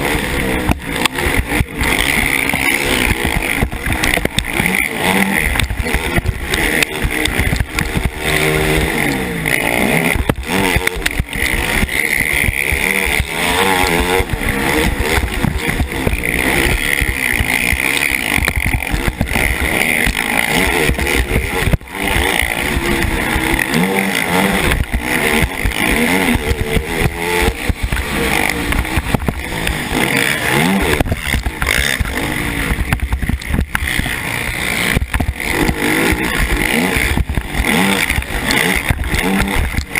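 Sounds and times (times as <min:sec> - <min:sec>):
quad engine revving: 0:00.0 - 0:39.9
wind noise on microphone: 0:14.0 - 0:17.4, 0:24.4 - 0:30.0, 0:30.6 - 0:39.9.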